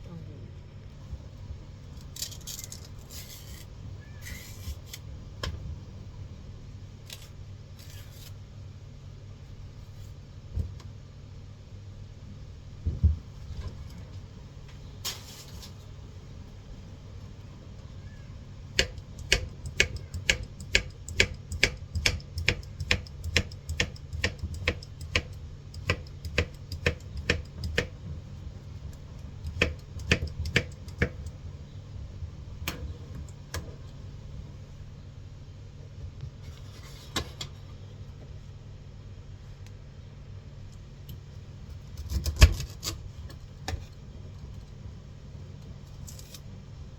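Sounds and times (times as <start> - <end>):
knife chopping on cutting board: 18.8 - 27.9, 29.4 - 31.2.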